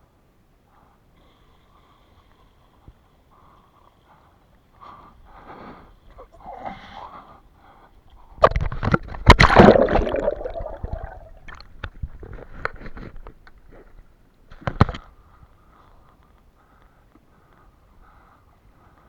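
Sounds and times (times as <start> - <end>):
water splashing and sloshing: 8.4 - 13.8.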